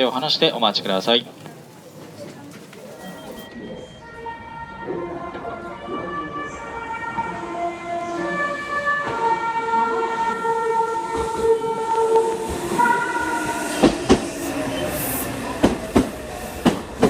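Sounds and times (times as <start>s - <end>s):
musical train horn: 3.9s - 14.1s.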